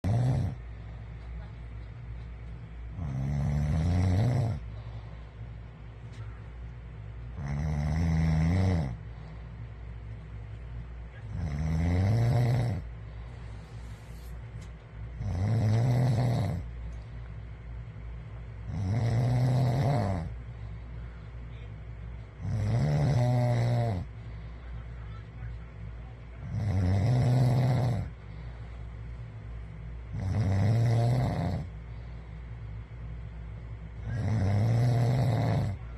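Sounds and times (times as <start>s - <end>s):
man snoring: 0.0s - 0.6s, 2.9s - 4.7s, 7.4s - 9.0s, 11.2s - 12.9s, 15.2s - 16.7s, 18.6s - 20.4s, 22.4s - 24.1s, 26.4s - 28.2s, 30.1s - 31.8s, 34.0s - 35.9s
steady low hum: 0.0s - 35.9s.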